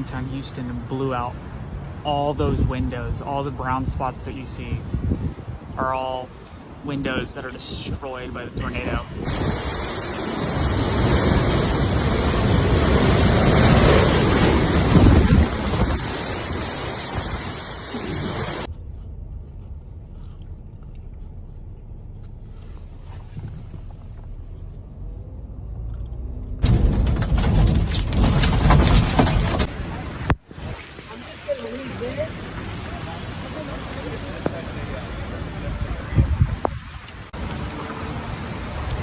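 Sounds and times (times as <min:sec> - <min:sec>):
wind buffeting microphone: 0:01.8 - 0:18.7, 0:23.1 - 0:24.2, 0:34.4 - 0:39.0
low rumble: 0:08.4 - 0:30.4.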